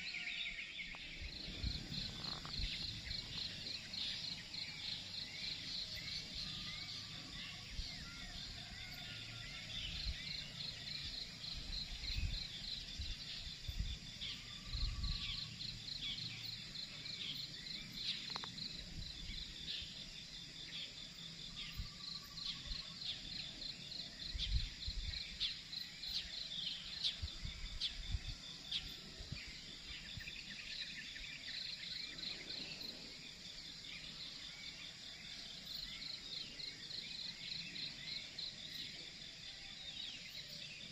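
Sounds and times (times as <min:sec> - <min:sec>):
bird chirps: 0:00.0 - 0:09.1
insects chirring: 0:00.0 - 0:40.9.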